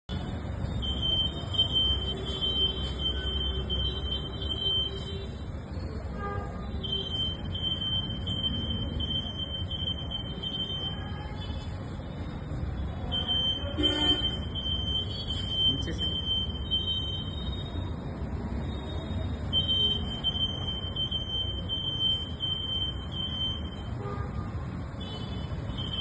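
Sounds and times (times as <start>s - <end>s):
high electronic alarm tone: 0.6s - 5.4s, 6.8s - 11.1s, 13.1s - 17.9s, 18.7s - 23.9s, 25.7s - 26.0s.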